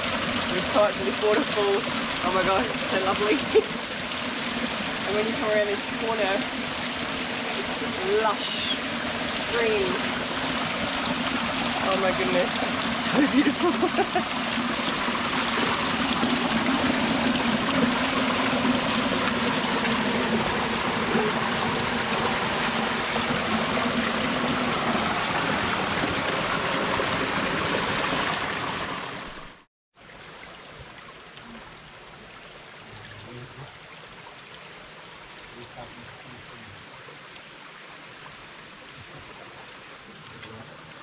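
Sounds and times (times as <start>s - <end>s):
waterfall rushing: 0.0s - 29.5s
quiet flow of water: 0.0s - 41.0s.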